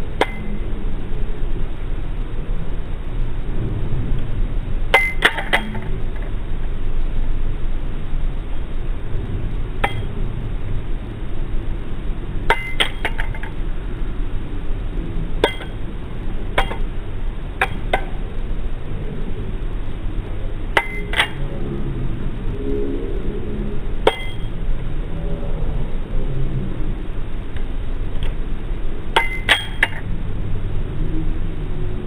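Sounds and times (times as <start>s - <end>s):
steady low hum: 0.0s - 32.0s
balisong handles clinking: 29.2s - 30.1s.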